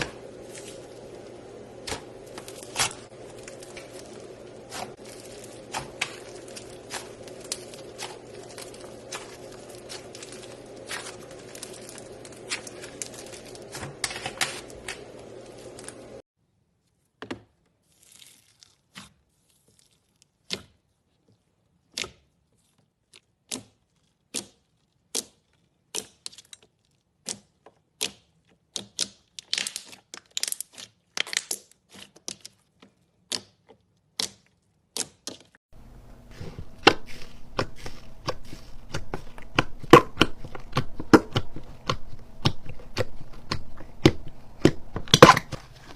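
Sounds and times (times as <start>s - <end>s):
slime clicking and crackling: 1.8s - 16.1s, 23.0s - 35.6s.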